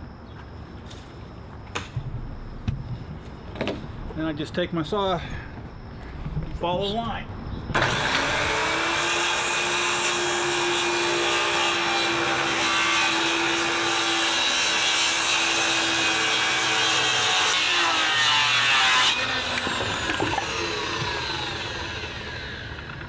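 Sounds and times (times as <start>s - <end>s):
circular saw cutting wood: 7.8s - 23.0s.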